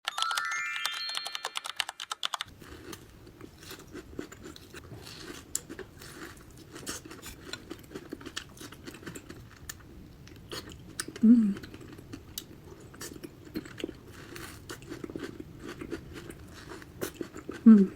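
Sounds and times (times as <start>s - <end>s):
rapid clicks: 1.0s - 2.5s
person chewing: 2.5s - 17.9s.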